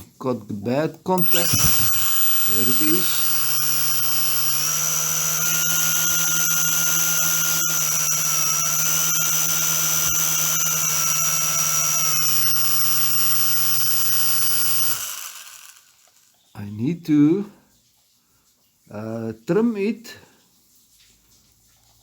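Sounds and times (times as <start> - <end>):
drone motors high whine: 1.2 - 15.9.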